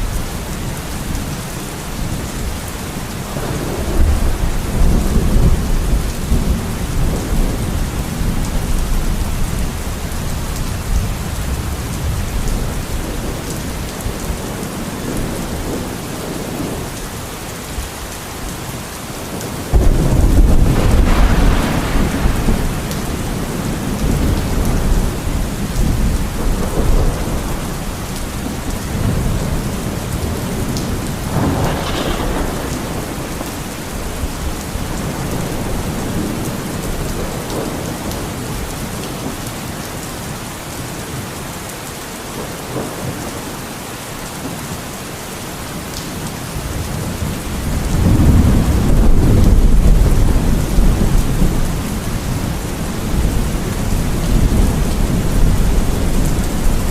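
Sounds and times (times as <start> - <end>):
steady rain: 0.0 - 56.9
thunder rumbling: 2.0 - 17.0, 19.2 - 39.4, 46.6 - 56.9
thunder crack: 19.7 - 27.9, 31.2 - 36.4.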